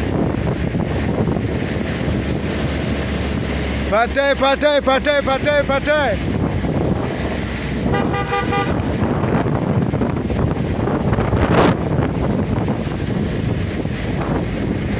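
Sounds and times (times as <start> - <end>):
wind buffeting microphone: 0.0 - 14.9
vehicle horn: 7.9 - 9.0.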